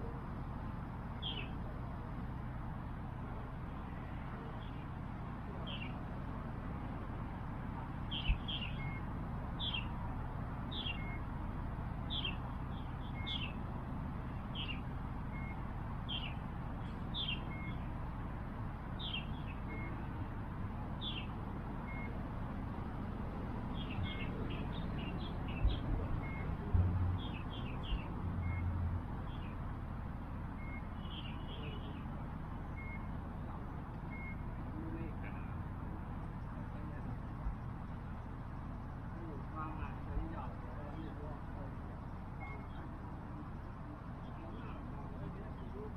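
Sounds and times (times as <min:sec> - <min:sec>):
bird chirping: 0:01.1 - 0:01.6, 0:08.0 - 0:10.0, 0:10.6 - 0:11.3, 0:11.9 - 0:18.0, 0:18.9 - 0:20.2, 0:21.0 - 0:22.2, 0:23.6 - 0:29.7, 0:30.6 - 0:33.2.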